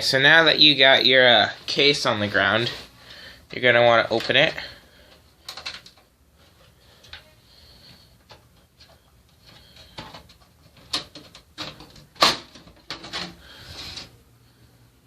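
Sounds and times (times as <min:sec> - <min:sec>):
computer case clicks and knocks: 0:10.0 - 0:13.4.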